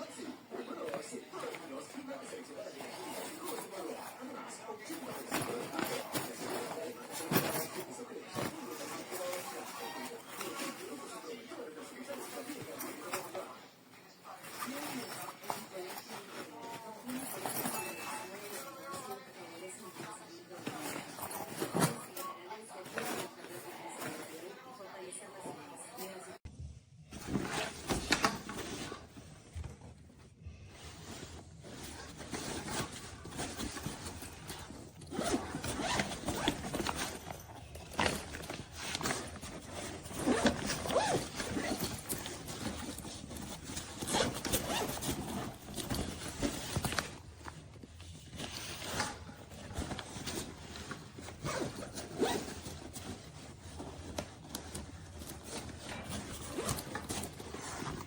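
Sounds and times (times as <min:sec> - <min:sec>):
fabric rustling and scraping: 0:00.0 - 0:26.4, 0:27.1 - 0:58.0
zippers being worked: 0:31.7 - 0:47.2, 0:48.3 - 0:58.0.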